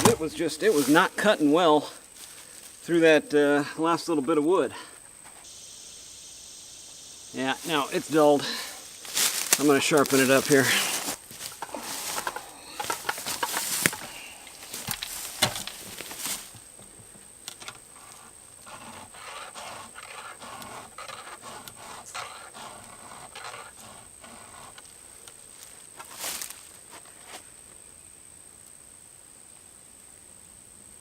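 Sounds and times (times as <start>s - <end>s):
file rasping on chainsaw chain: 18.0s - 24.8s.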